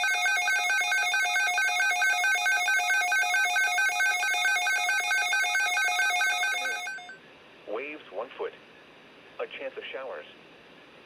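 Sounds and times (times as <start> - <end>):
warbling electronic alert tone: 0.0 - 7.2.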